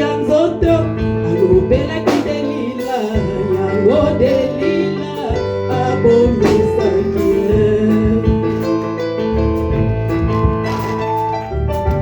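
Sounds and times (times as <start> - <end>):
person singing praise song: 0.0 - 8.6
keyboard chords and bass: 0.0 - 12.0.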